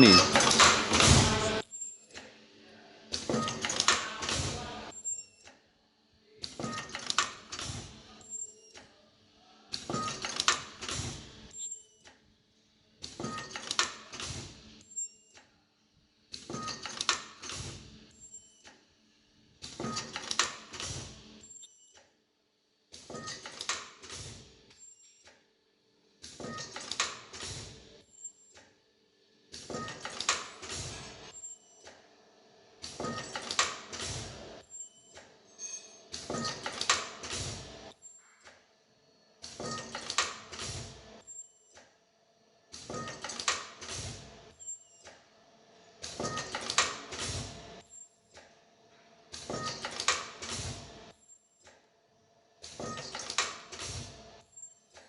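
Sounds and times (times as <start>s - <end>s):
machine mechanical clacks: 0.3s - 2.3s, 9.7s - 12.2s, 13.0s - 15.4s, 19.6s - 22.1s, 22.9s - 25.5s, 26.2s - 28.8s, 29.5s - 32.2s, 32.8s - 38.7s, 39.4s - 42.0s, 42.7s - 51.9s, 52.6s - 55.0s.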